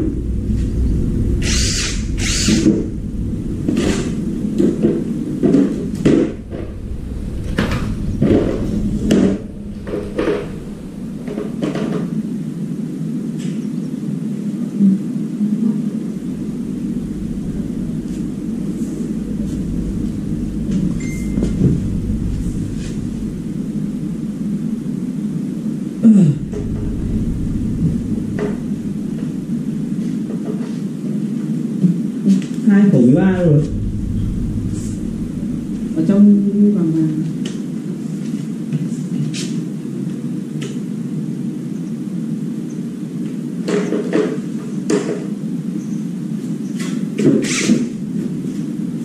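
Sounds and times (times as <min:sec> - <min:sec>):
low machine rumble: 0:00.0 - 0:31.1, 0:32.2 - 0:38.4, 0:47.4 - 0:49.0.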